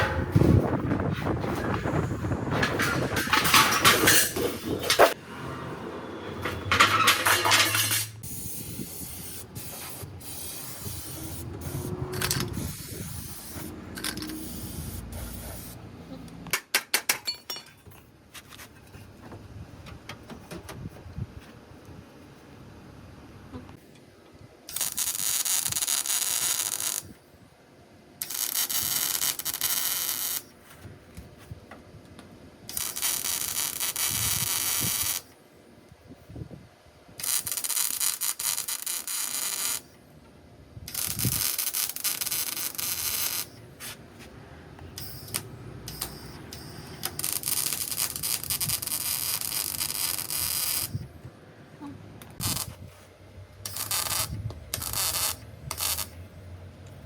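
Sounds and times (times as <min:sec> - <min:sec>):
spray hissing: 0:08.2 - 0:15.8
welder crackling buzz: 0:24.7 - 0:27.2, 0:28.2 - 0:30.5, 0:32.7 - 0:35.4, 0:37.2 - 0:40.0, 0:40.9 - 0:43.6, 0:45.0 - 0:51.1, 0:52.3 - 0:52.8, 0:53.6 - 0:56.2.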